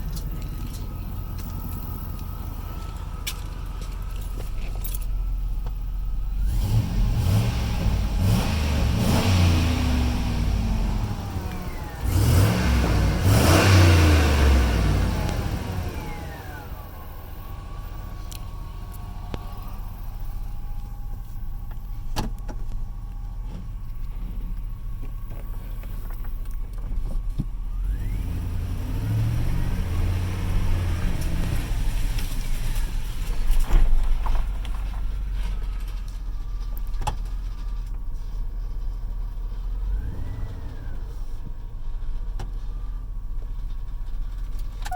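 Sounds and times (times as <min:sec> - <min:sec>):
pickup engine revving: 0:00.0 - 0:23.6, 0:27.5 - 0:35.9, 0:39.5 - 0:42.5
faint whine rising in pitch: 0:13.8 - 0:26.1.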